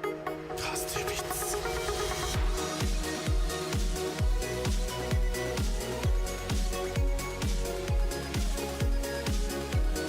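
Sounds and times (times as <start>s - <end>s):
electronic dance music: 0.0s - 10.0s
deep kick drum: 2.4s - 10.0s.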